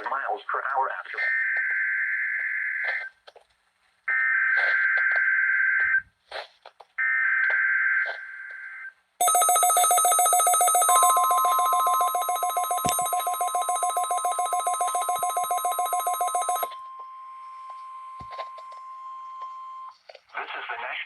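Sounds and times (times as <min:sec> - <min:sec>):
pulsing electronic alarm: 0:09.2 - 0:16.8
steady alarm tone: 0:09.2 - 0:17.0.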